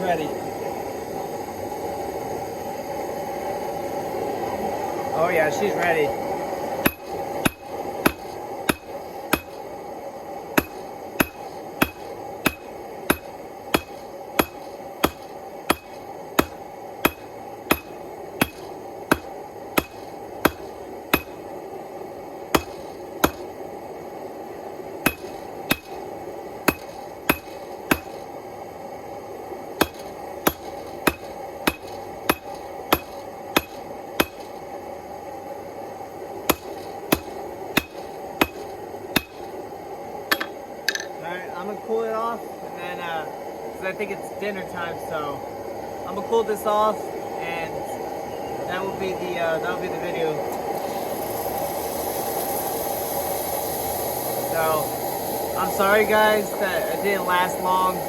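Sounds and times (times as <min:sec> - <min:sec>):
hammer striking hot steel: 0:06.8 - 0:09.8, 0:10.5 - 0:21.5, 0:22.5 - 0:23.6, 0:25.0 - 0:28.4, 0:29.8 - 0:34.7, 0:36.4 - 0:39.6, 0:40.3 - 0:41.2.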